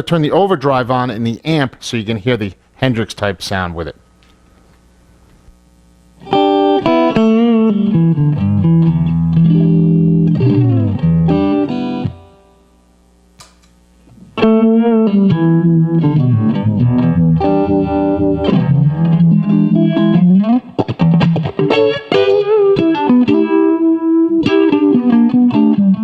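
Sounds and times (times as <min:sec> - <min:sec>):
electric guitar with vibrato effect: 0:06.2 - 0:12.7, 0:14.1 - 0:26.0.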